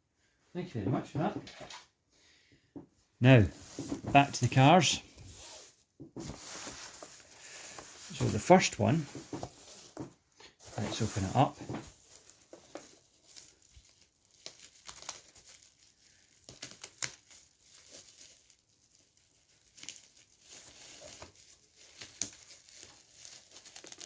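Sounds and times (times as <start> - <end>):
packaging crinkling and tearing: 10.6 - 24.0.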